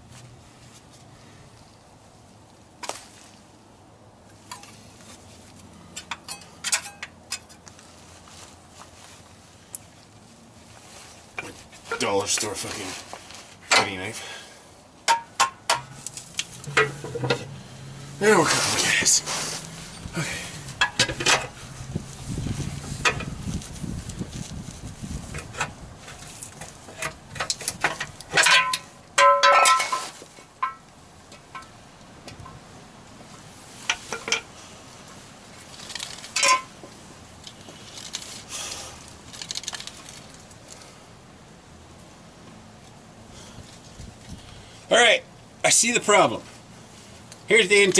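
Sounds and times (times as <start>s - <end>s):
metal tools scraping and clinking: 5.9s - 7.6s, 15.1s - 17.6s, 25.4s - 30.8s, 35.7s - 36.9s
low steady hum: 14.2s - 33.5s
ringing metallic clanks: 15.1s - 17.6s.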